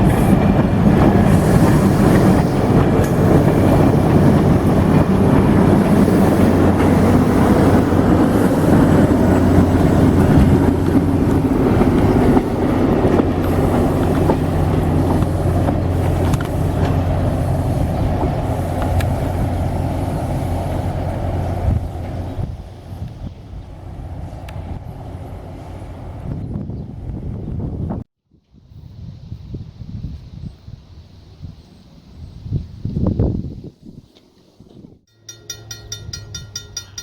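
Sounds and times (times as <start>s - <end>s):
train cars rolling on rails: 0.0s - 27.1s
diesel locomotive drone: 0.0s - 28.0s, 35.1s - 37.0s.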